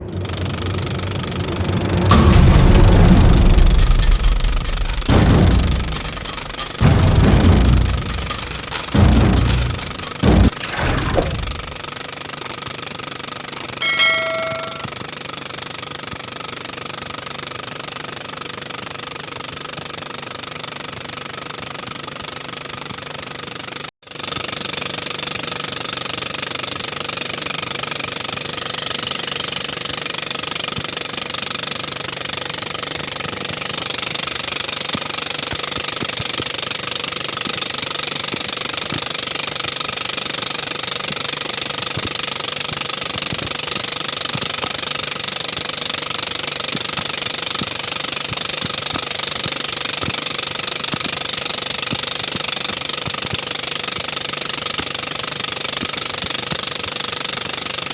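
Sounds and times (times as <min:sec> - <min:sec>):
small boat engine running: 0:24.1 - 0:57.9.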